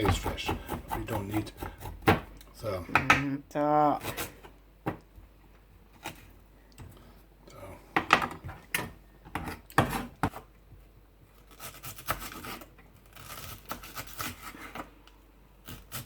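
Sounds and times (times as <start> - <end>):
knife knocking on chopping board: 0.0 - 2.3
knife scraping on board: 0.0 - 2.3, 9.4 - 10.4, 11.5 - 14.9.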